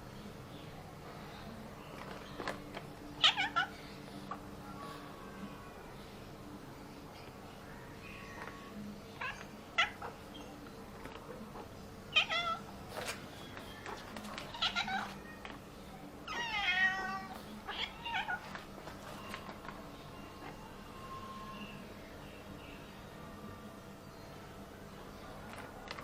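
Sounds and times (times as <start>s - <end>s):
cat meowing: 3.2s - 3.8s, 8.2s - 10.1s, 12.1s - 12.6s, 14.5s - 15.2s, 16.3s - 18.4s.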